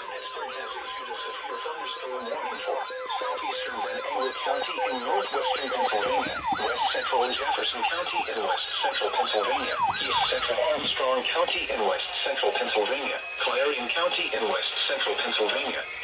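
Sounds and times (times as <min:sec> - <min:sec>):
steady electronic tones: 0:00.0 - 0:14.6
electronic siren yelping: 0:00.0 - 0:16.0.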